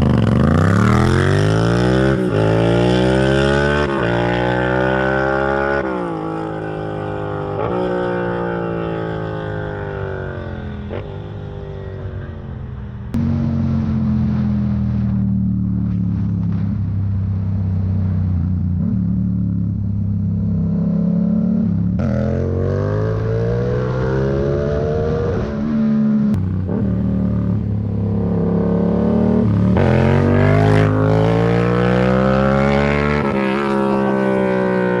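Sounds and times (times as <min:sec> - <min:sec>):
loud motorcycle engine revving: 0:00.0 - 0:11.2, 0:20.5 - 0:35.0.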